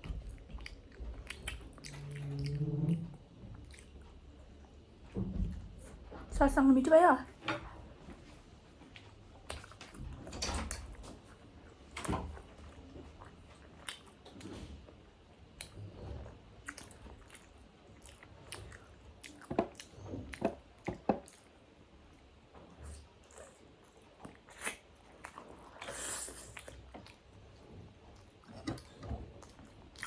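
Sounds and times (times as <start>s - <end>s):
chewing and biting food: 0.0s - 4.9s, 12.4s - 30.0s.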